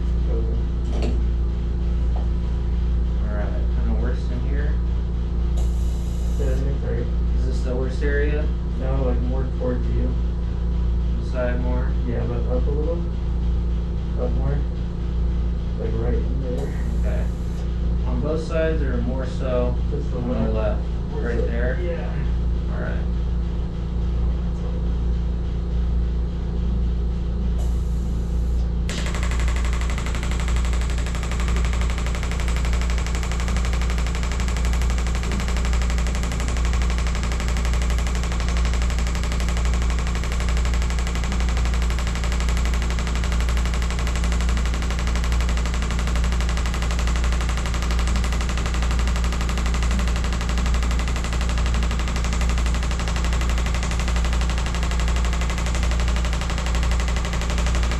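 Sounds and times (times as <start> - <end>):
steady low hum: 0.0 - 57.9
shockwave device rapid tapping: 28.9 - 57.9.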